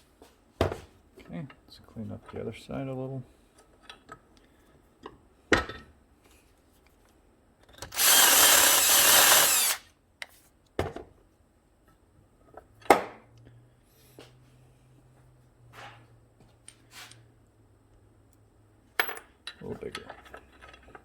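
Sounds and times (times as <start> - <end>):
power drill cutting metal: 7.9 - 9.8.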